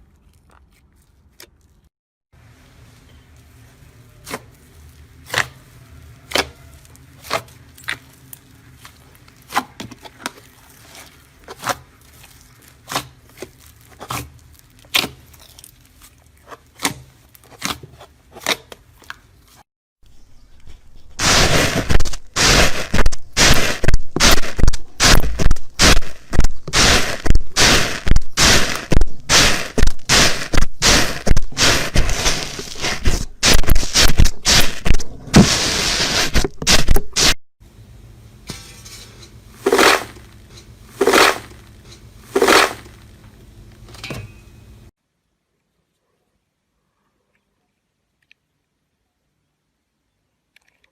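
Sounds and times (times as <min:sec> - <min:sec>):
rapid scraping strokes: 0:20.6 - 0:37.4, 0:39.6 - 0:40.2, 0:40.9 - 0:41.6.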